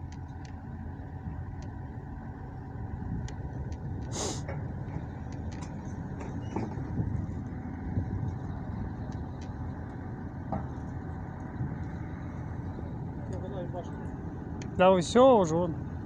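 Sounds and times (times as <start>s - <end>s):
motor vehicle engine rumble: 0.0s - 16.0s
short sharp hiss: 4.1s - 4.5s.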